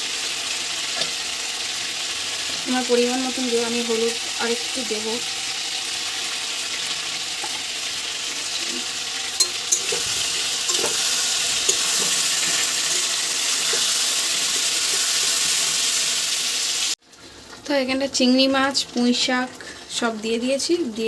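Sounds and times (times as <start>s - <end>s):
vegetables sizzling in oil: 0.0s - 21.0s.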